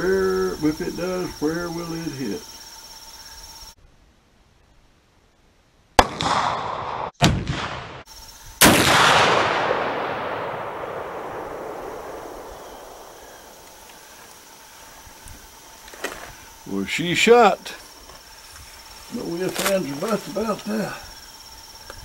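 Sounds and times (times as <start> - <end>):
rifle shots: 6.0 - 13.6.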